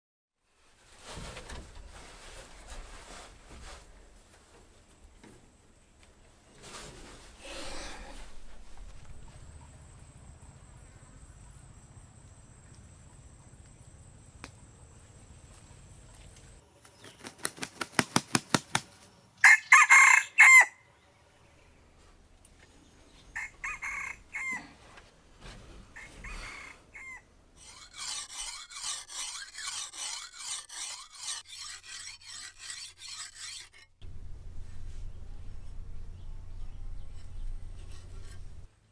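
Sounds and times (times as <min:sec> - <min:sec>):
rooster crowing: 0:19.4 - 0:20.8, 0:23.3 - 0:24.8, 0:26.0 - 0:27.2
chickens calling: 0:25.9 - 0:27.2
regular rasping strokes: 0:27.5 - 0:38.7.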